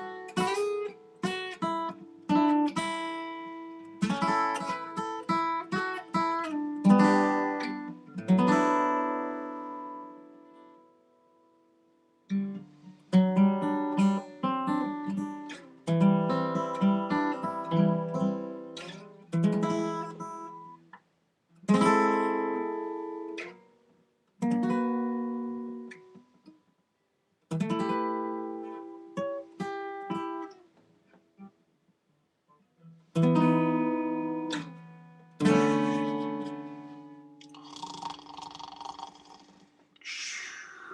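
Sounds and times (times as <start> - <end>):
acoustic guitar chords: 0.0 - 21.0, 21.6 - 23.7, 32.9 - 40.2.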